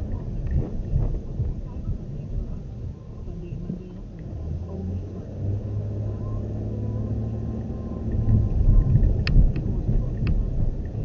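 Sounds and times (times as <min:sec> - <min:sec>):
car engine and road rumble: 0:00.0 - 0:11.0.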